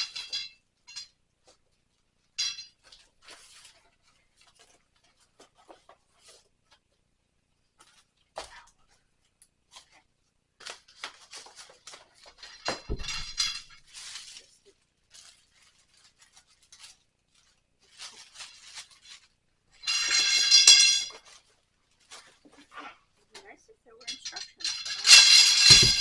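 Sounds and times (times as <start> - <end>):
drying rack parts clinking: 0.0 - 1.2, 2.4 - 3.1, 12.2 - 14.2, 19.8 - 21.4, 23.9 - 26.0.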